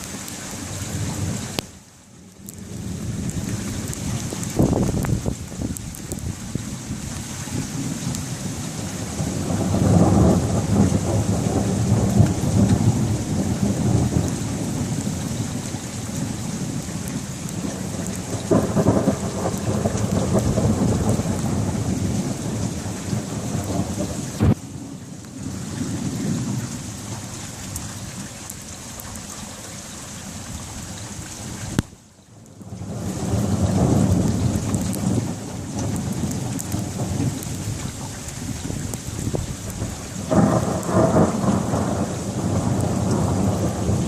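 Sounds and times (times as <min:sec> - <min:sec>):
rain hiss: 0:00.0 - 0:44.0
thunder rumbling: 0:02.4 - 0:27.5, 0:32.5 - 0:44.0
sharp thunder crack: 0:09.2 - 0:14.9, 0:17.6 - 0:24.8, 0:39.2 - 0:44.0.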